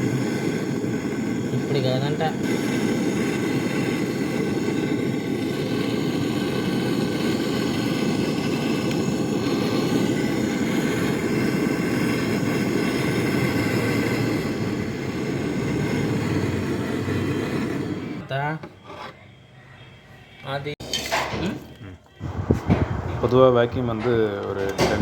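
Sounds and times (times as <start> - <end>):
vacuum pump running: 0.0 - 18.2.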